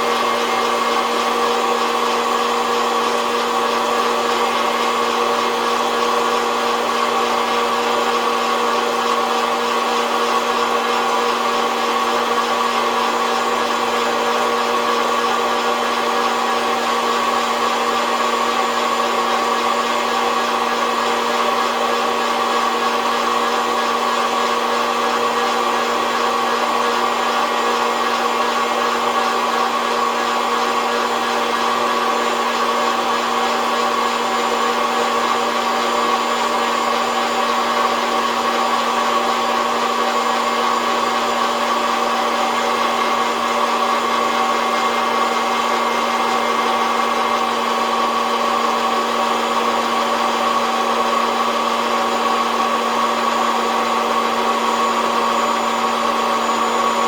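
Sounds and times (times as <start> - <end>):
coffee roaster fan humming: 0.0 - 20.5.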